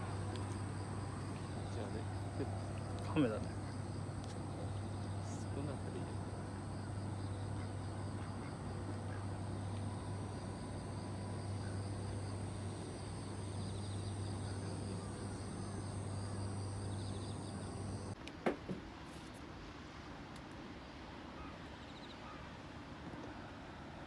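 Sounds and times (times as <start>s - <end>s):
low steady hum: 0.0s - 18.2s
high-pitched insect trill: 9.6s - 18.2s.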